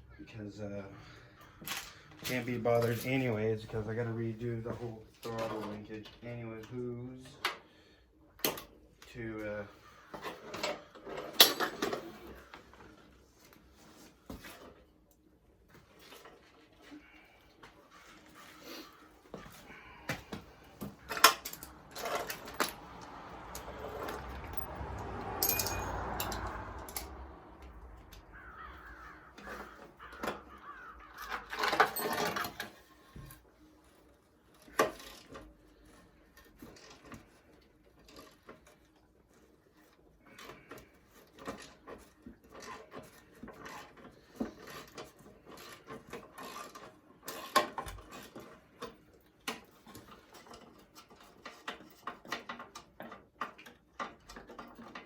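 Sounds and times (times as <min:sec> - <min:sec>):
rustling scraping noise: 0:01.8 - 0:06.1
tool clicks and metal clatter: 0:10.2 - 0:12.4, 0:20.8 - 0:28.3, 0:31.1 - 0:32.8, 0:34.6 - 0:55.0.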